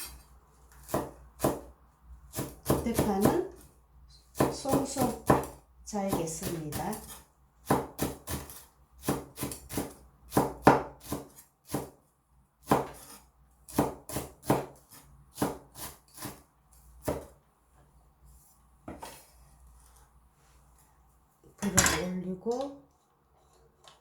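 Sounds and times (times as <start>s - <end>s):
knife chopping green onion: 0.8s - 3.7s, 4.3s - 12.0s, 12.6s - 17.4s.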